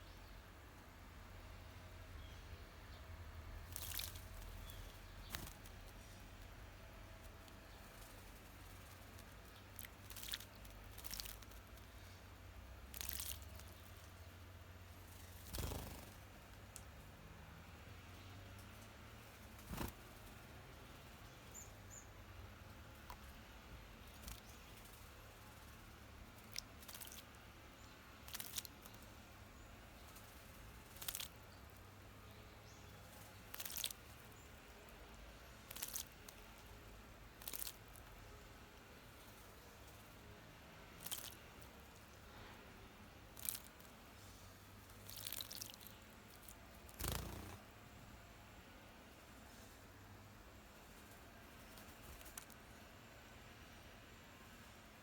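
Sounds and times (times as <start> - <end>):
faint outdoor background: 0.0 - 55.0
bird splashing in water: 3.7 - 4.4, 8.8 - 11.7, 12.9 - 14.0, 26.4 - 27.4, 28.2 - 29.0, 30.8 - 31.4, 33.4 - 34.1, 35.7 - 36.4, 37.3 - 38.0, 41.0 - 42.1, 43.3 - 43.9, 44.8 - 47.6
wings fluttering: 3.7 - 6.4, 7.2 - 11.9, 12.9 - 14.2, 14.9 - 16.7, 19.2 - 21.3, 24.0 - 27.4, 28.2 - 29.0, 30.0 - 31.4, 33.0 - 34.4, 35.6 - 36.7, 37.4 - 38.0, 41.0 - 42.1, 43.3 - 43.9, 44.8 - 47.7, 50.9 - 52.8.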